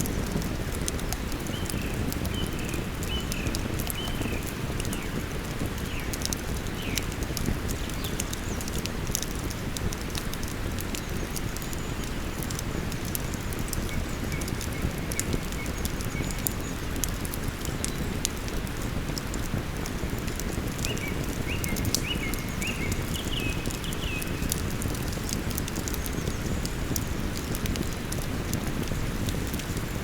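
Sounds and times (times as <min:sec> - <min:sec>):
campfire crackling and popping: 0:00.0 - 0:30.0.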